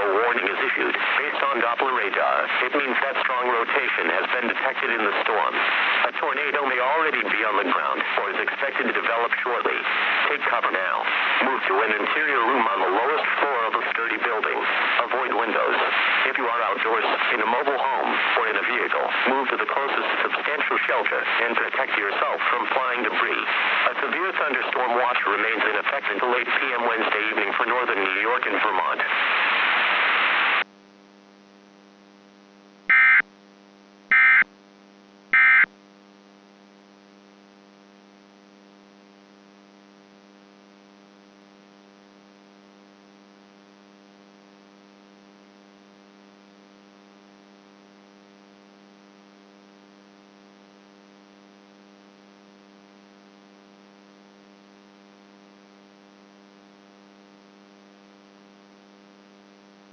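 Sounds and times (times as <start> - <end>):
data tone bursts: 32.9 - 33.2, 34.1 - 34.4, 35.4 - 35.7.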